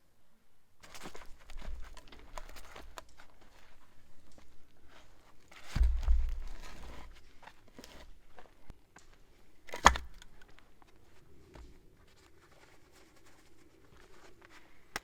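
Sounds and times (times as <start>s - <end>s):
rustling and crinkling: 0.8s - 15.0s.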